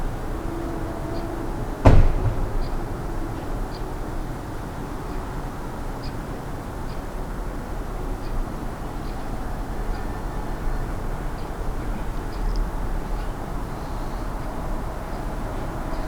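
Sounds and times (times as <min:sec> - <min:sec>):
outdoor background rumble: 0:00.0 - 0:06.0.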